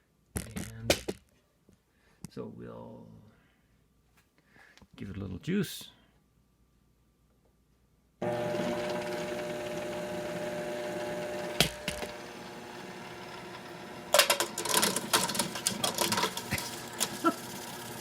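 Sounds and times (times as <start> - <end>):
treadmill motor humming: 8.2 - 18.0.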